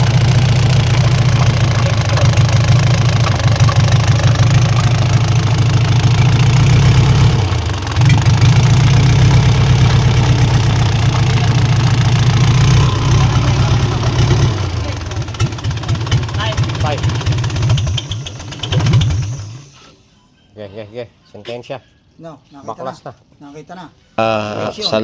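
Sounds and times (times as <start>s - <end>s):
diesel engine knocking: 0.0s - 19.6s.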